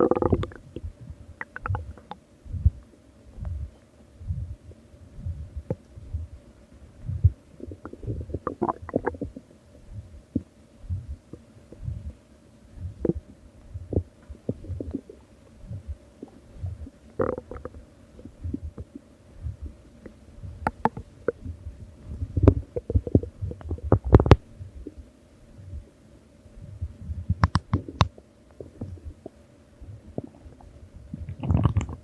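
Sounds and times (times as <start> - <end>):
stomach growling: 0.0 - 2.8, 7.1 - 12.2, 12.8 - 19.7, 20.5 - 25.0, 26.6 - 32.0.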